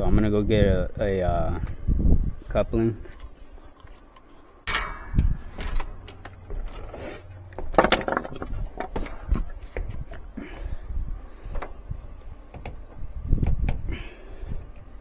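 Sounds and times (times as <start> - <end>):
objects knocking and clattering: 4.7 - 9.5.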